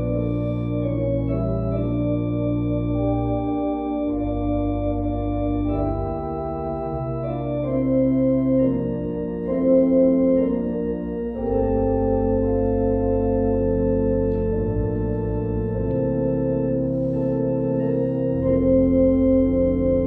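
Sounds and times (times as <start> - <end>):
organ playing sustained chords: 0.0 - 20.0.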